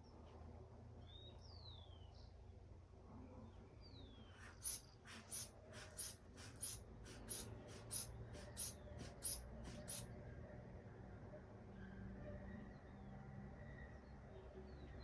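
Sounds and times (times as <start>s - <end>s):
hand bulb pump hissing: 4.6s - 10.0s.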